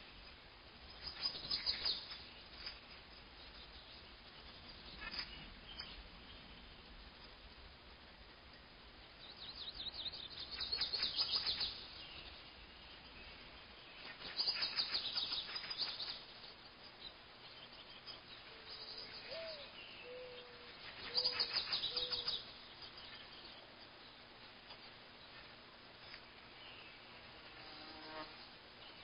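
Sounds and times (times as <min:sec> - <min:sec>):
songbird singing rapid trill: 0:00.0 - 0:07.0, 0:08.6 - 0:29.0
bird soft low calls: 0:17.6 - 0:23.8.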